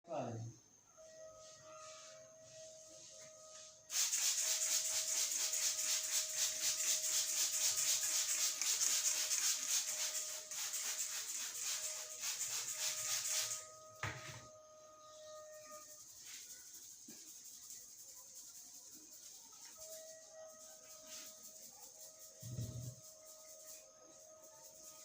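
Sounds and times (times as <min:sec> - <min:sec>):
faint background music: 0:00.0 - 0:25.0
hands rubbing through hair: 0:03.9 - 0:13.7, 0:15.8 - 0:25.0.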